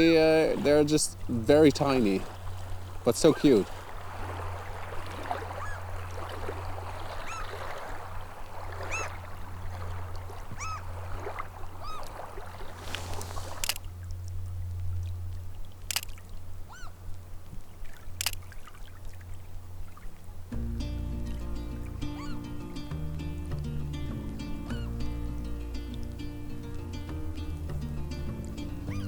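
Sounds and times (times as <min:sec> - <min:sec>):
running water hiss: 0:00.0 - 0:13.9
low wind rumble: 0:00.0 - 0:29.0
small bird calling: 0:02.4 - 0:04.0, 0:05.3 - 0:06.1, 0:06.8 - 0:07.8, 0:08.7 - 0:09.8, 0:10.4 - 0:13.7, 0:16.6 - 0:17.0, 0:22.1 - 0:22.5, 0:24.7 - 0:25.0
sharp clicks: 0:13.3 - 0:13.9, 0:15.8 - 0:16.2, 0:18.2 - 0:18.5.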